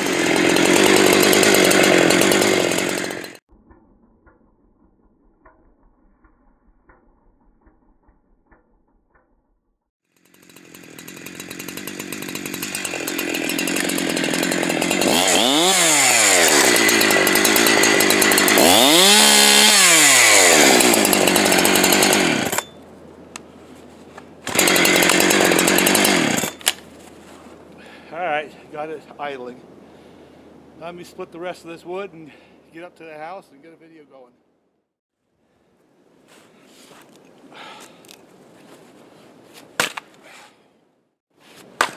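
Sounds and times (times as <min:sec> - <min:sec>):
chainsaw running at high revs: 0:00.0 - 0:03.4, 0:10.1 - 0:22.8, 0:24.5 - 0:26.8.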